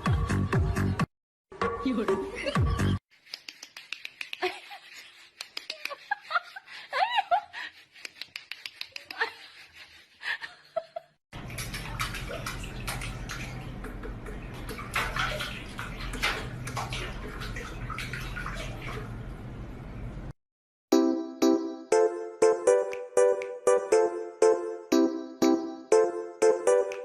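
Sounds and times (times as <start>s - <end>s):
water splashing and running: 11.4s - 19.6s.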